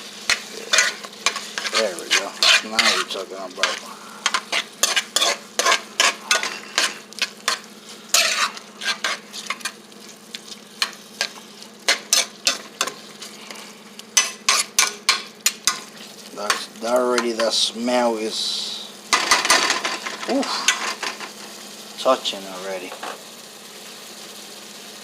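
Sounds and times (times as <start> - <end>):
food sizzling in a frying pan: 0.0 - 25.0
utensil scraping a pan: 0.2 - 9.8, 10.8 - 17.5.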